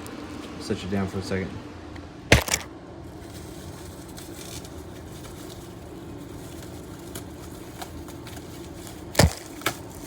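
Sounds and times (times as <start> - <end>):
low background hum: 0.0 - 10.0.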